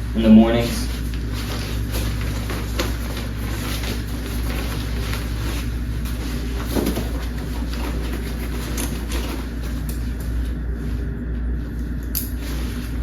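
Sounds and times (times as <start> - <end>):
gear rustling and clicking: 0.8 - 10.5.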